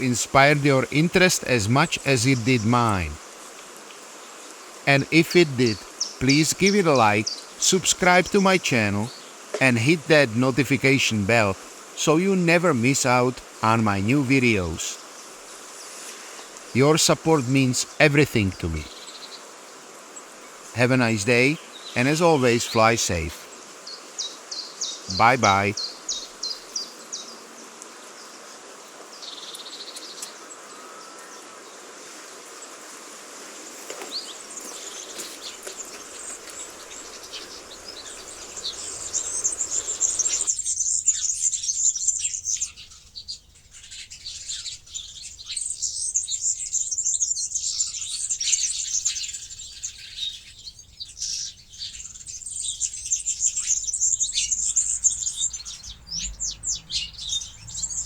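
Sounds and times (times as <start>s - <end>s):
steady outdoor hiss: 0.0s - 58.0s
birds chirping and singing: 4.9s - 15.0s, 36.6s - 58.0s.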